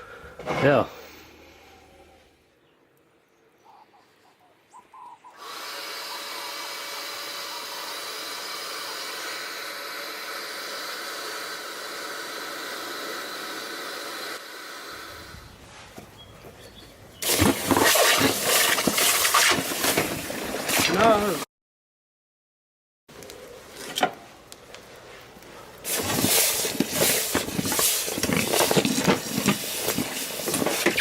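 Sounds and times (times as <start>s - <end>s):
hot steel sizzling in water: 17.2s - 21.2s, 25.8s - 31.0s.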